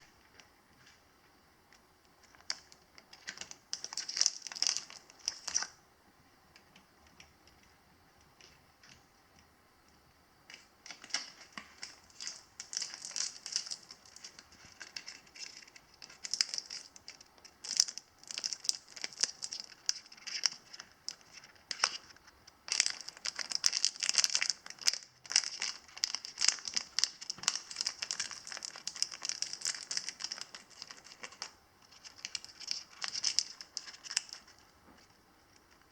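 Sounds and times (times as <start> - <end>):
parrot crunching biscuit: 2.3 - 5.8, 10.9 - 34.6.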